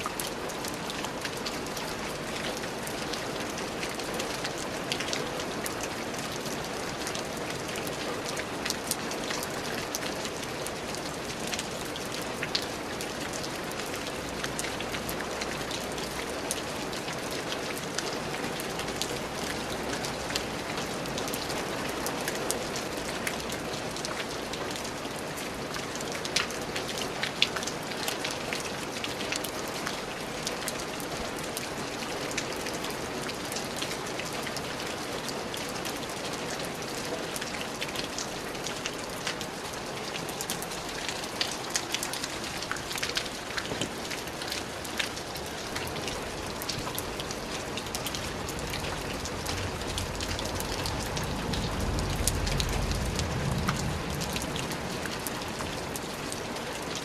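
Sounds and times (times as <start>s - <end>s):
steady rain hiss: 0.0s - 57.0s
raindrops ticking sharply: 40.4s - 56.2s.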